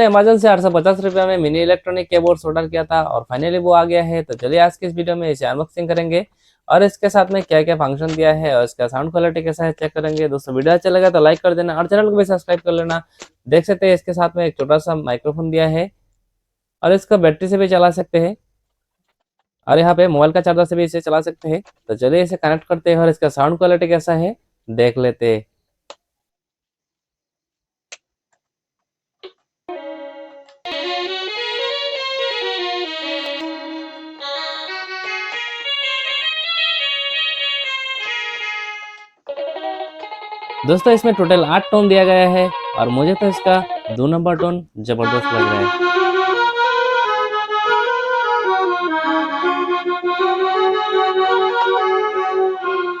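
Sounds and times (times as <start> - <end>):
electronic keyboard playing tune: 0.0 - 6.3, 6.9 - 13.0, 29.7 - 53.0.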